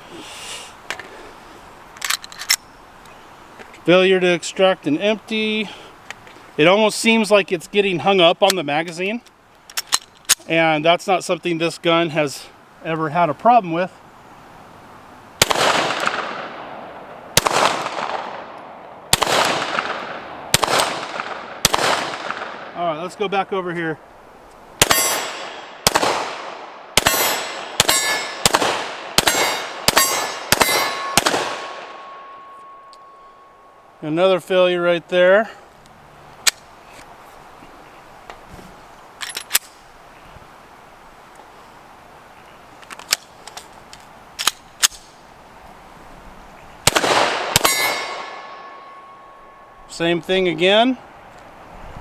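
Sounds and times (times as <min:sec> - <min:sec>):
metallic clicks of pistol handling: 0:02.0 - 0:02.7, 0:09.2 - 0:10.5, 0:39.2 - 0:39.8, 0:42.8 - 0:45.1
pistol shots: 0:15.4 - 0:22.8, 0:24.8 - 0:32.4, 0:46.8 - 0:48.8
steel target ringing clang: 0:24.8 - 0:25.5, 0:27.0 - 0:28.4, 0:29.2 - 0:33.8, 0:47.6 - 0:49.8.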